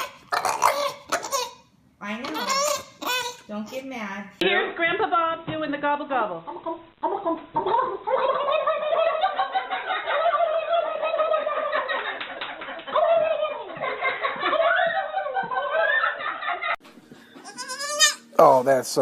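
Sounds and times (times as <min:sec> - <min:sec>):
people laughing: 0:06.6 - 0:16.8.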